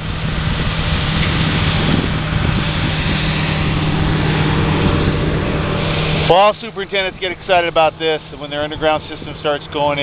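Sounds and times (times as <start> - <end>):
diesel engine droning: 0.0 - 10.0
engine clatter: 0.0 - 10.0.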